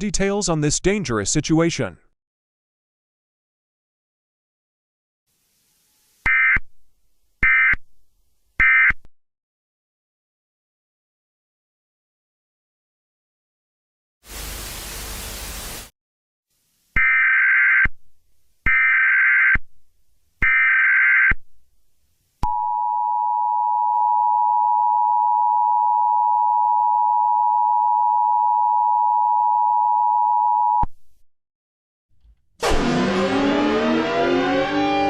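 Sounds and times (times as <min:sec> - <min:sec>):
static hiss: 0:05.3 - 0:06.3, 0:14.3 - 0:15.9
siren-like sound: 0:32.6 - 0:35.0.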